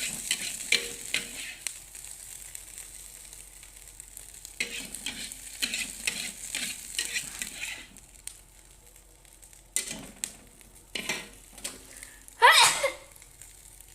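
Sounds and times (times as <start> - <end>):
spatula scraping a pan: 0.0 - 2.2, 4.5 - 8.2, 9.8 - 12.0
food sizzling in a pan: 0.0 - 13.9.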